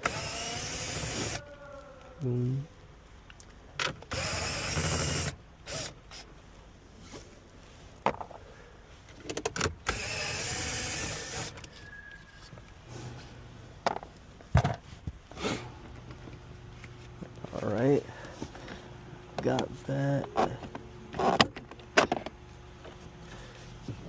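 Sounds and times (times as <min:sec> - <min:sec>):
cordless impact gun bursts: 0:00.0 - 0:01.4, 0:04.1 - 0:06.3, 0:09.8 - 0:11.6.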